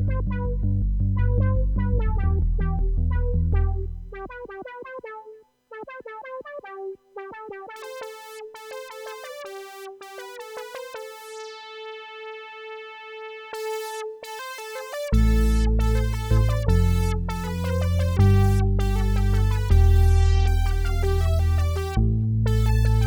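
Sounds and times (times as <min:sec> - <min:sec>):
deep synth bass line: 0:00.0 - 0:04.8, 0:15.0 - 0:23.0
sustained synth notes: 0:00.0 - 0:05.2, 0:13.6 - 0:23.0
synth plucked notes: 0:00.0 - 0:23.0.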